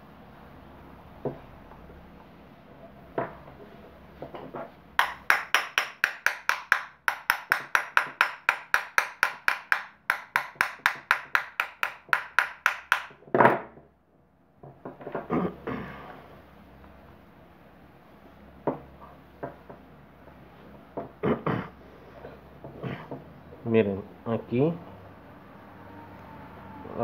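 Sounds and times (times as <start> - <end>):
rapid taps on motor cover: 5.0 - 13.2.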